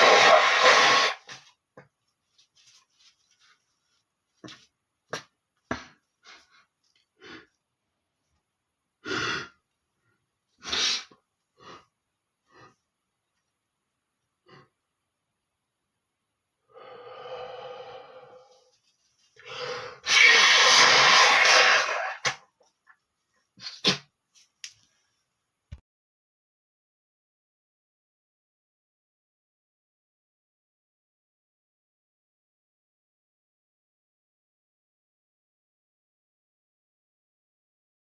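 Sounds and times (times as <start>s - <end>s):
nose blowing: 0.0s - 1.4s, 10.6s - 11.8s, 19.5s - 22.4s
man sniffing: 10.6s - 11.9s.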